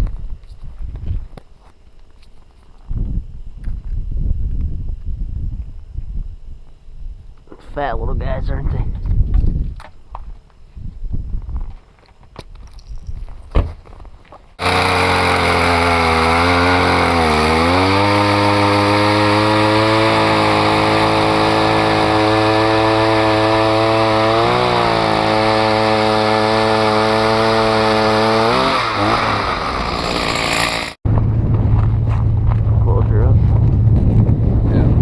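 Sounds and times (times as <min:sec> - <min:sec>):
ice auger engine running: 0:14.6 - 0:31.0.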